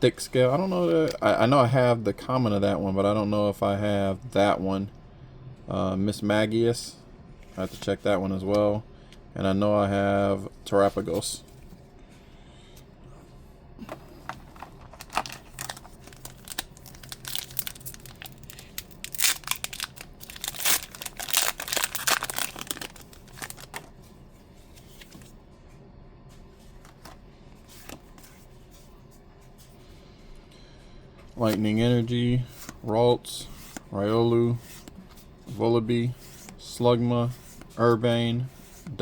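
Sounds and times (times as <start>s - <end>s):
foil wrapper tearing and crinkling: 14.6s - 23.9s.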